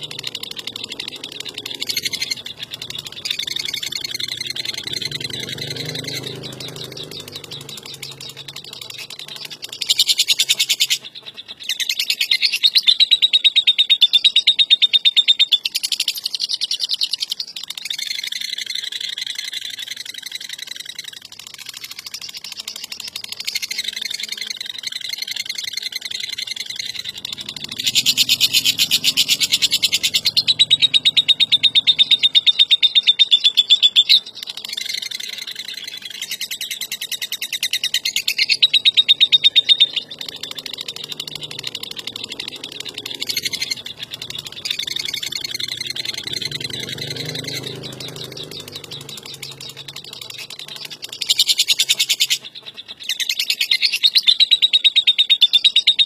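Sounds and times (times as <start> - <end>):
lovebird rattling chatter: 0.0 - 12.8, 15.7 - 54.2.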